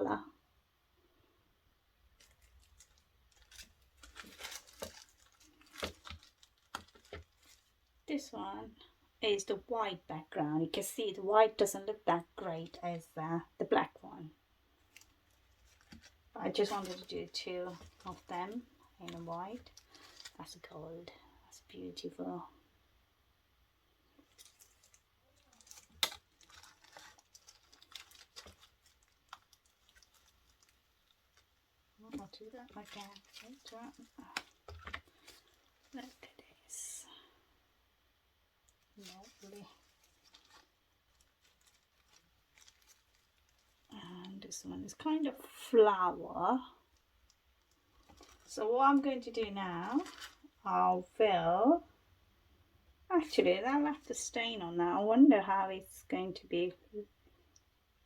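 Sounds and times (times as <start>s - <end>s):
crinkly rustles: 2.0s - 8.9s, 14.7s - 21.4s, 24.0s - 37.4s, 38.6s - 45.4s, 46.5s - 50.6s.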